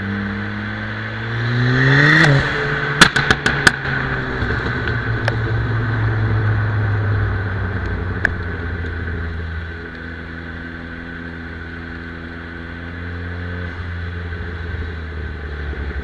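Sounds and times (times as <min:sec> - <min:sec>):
car engine revving: 0:00.0 - 0:16.0
exhaust pops and bangs: 0:02.9 - 0:05.8.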